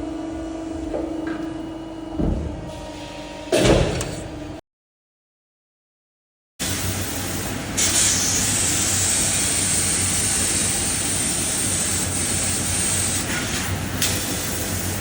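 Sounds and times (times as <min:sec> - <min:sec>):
machine low hum: 0:00.0 - 0:04.6
high-pitched hiss of assist gas: 0:07.8 - 0:13.6.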